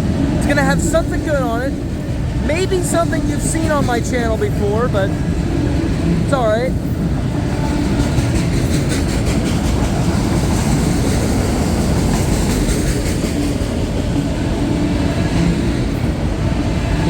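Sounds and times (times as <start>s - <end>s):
freight train rumbling past: 0.0s - 17.0s.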